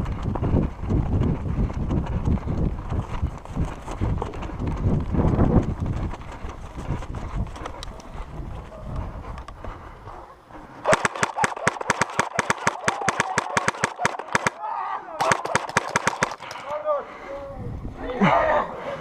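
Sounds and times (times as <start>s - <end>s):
airsoft gun rapid firing: 10.8s - 14.6s, 15.2s - 16.7s.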